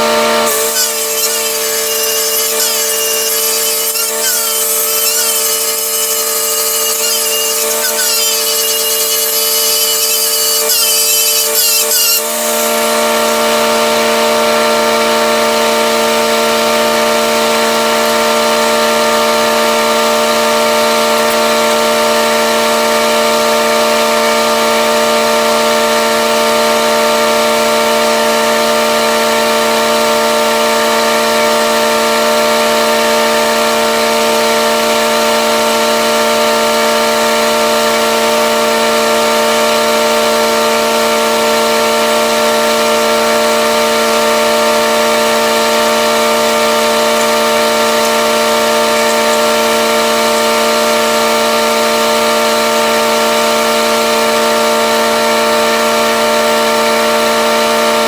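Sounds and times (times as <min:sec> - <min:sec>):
engine-driven welder running: 0:00.0 - 0:58.0
repeated squeak: 0:00.5 - 0:13.1, 0:21.1 - 0:21.8, 0:46.7 - 0:50.6.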